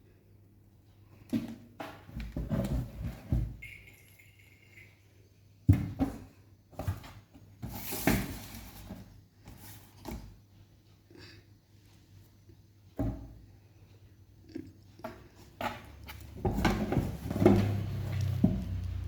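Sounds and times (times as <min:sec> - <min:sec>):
kittens scuffling in cardboard box: 0:06.0 - 0:10.4, 0:15.4 - 0:19.0.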